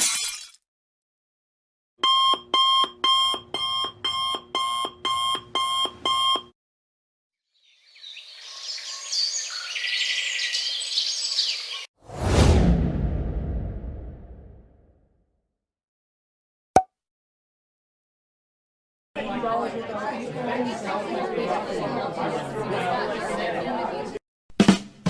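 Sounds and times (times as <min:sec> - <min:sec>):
alarm clock beeping: 0:02.0 - 0:06.4
loud deep sudden sound: 0:12.1 - 0:14.9.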